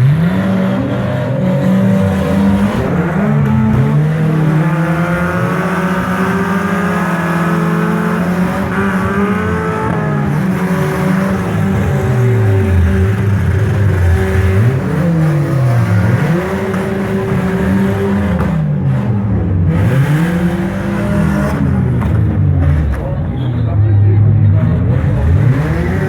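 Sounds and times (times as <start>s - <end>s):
car engines revving: 0.0s - 26.0s.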